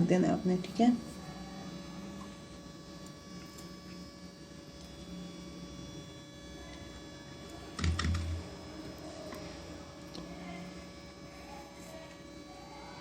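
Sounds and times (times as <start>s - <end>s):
low hum with faint tones: 0.0s - 13.0s.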